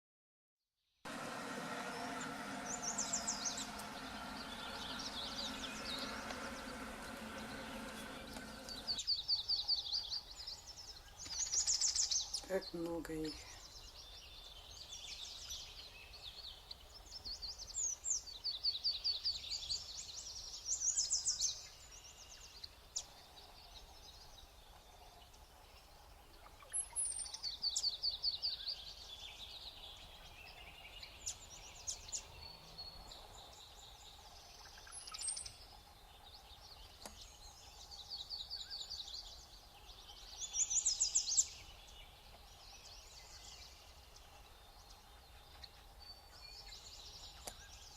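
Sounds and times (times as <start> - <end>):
faint steady hum: 1.1 - 9.1
songbirds singing: 1.1 - 47.9.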